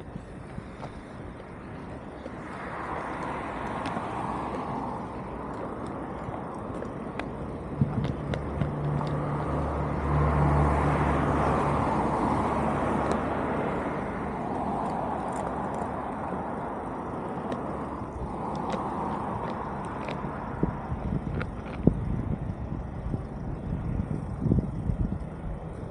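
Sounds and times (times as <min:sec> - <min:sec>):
low engine hum: 0:00.0 - 0:25.9
vehicles going past: 0:00.0 - 0:25.9.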